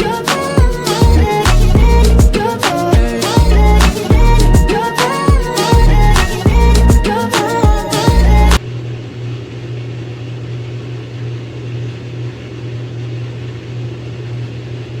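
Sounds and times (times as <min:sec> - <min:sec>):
washing machine hum: 0:06.5 - 0:15.0.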